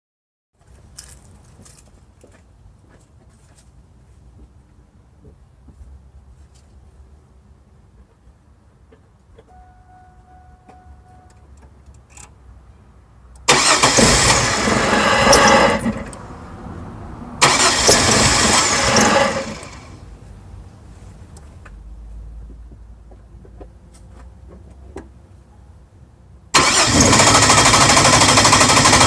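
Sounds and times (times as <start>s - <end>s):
engine starter cranking: 13.5s - 16.3s, 17.4s - 20.0s, 26.6s - 29.0s.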